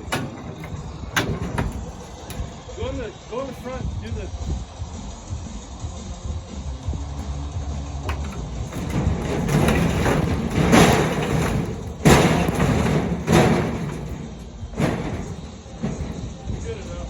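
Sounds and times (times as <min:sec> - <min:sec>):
scrap metal being handled: 0:00.0 - 0:03.9, 0:07.2 - 0:17.0
heavy thuds: 0:00.0 - 0:04.6, 0:08.0 - 0:17.0.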